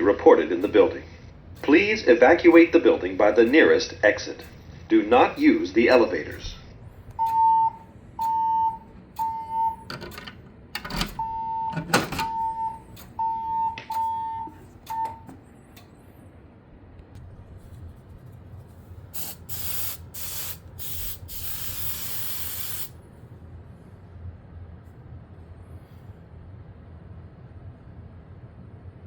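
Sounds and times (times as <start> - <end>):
fire alarm pulsed beeping: 4.4 - 10.2, 10.9 - 15.4
short hissing bursts: 19.1 - 23.0.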